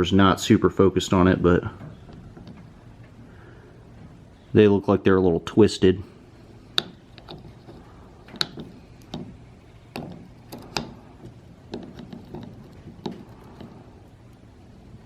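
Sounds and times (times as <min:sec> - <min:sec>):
plastic gears clicking and tapping: 0:06.7 - 0:13.8.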